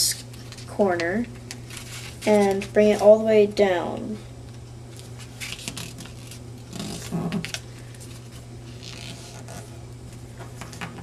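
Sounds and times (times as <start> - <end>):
paper rustling and crinkling: 1.5 - 3.1, 4.9 - 9.7.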